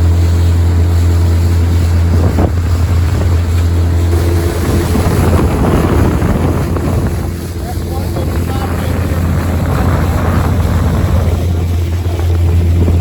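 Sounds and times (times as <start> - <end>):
outboard motor drone: 0.0 - 13.0
wind on microphone: 0.0 - 13.0.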